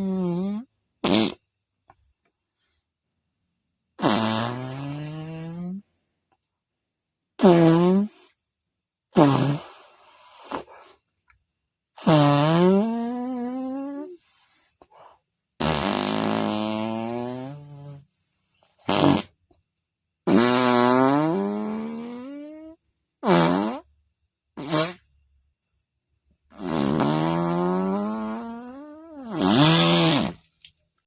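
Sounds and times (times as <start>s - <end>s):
people imitating farts: 0.0s - 1.4s, 4.0s - 5.8s, 7.4s - 8.3s, 9.2s - 10.8s, 12.0s - 14.5s, 15.6s - 18.0s, 18.8s - 19.3s, 20.3s - 23.8s, 24.6s - 25.0s, 26.5s - 30.4s.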